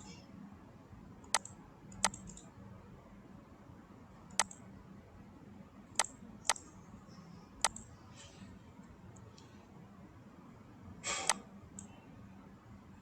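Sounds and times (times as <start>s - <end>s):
faint low hum: 0.0s - 13.0s
computer mouse clicks: 1.2s - 2.5s, 4.3s - 4.6s, 6.0s - 6.7s, 7.6s - 7.9s, 11.2s - 12.0s.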